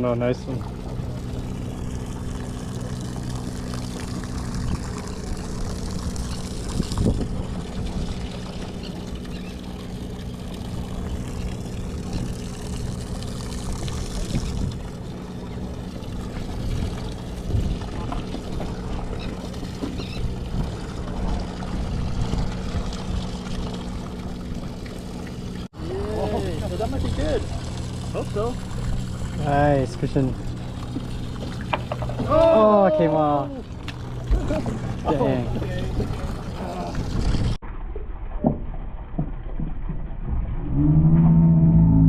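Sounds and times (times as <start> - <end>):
boat engine humming: 0.0 - 37.6, 40.7 - 42.0
water washing: 0.0 - 37.6
wind noise: 6.6 - 8.3.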